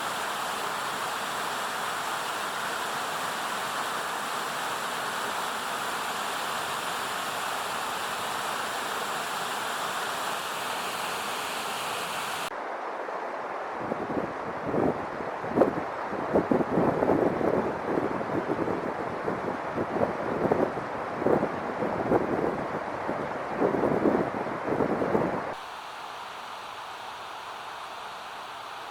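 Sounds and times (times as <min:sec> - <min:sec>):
flowing water rushing: 0:00.0 - 0:16.3, 0:25.5 - 0:28.9.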